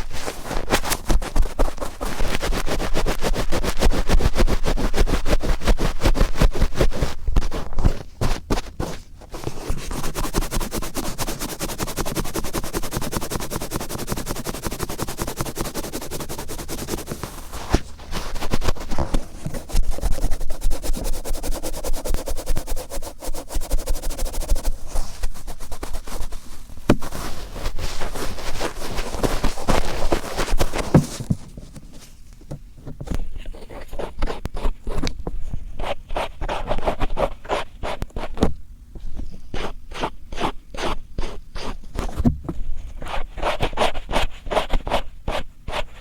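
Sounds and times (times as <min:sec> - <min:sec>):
cotton swab scratching in ear: 0:00.0 - 0:31.2, 0:33.3 - 0:35.1, 0:35.8 - 0:38.4.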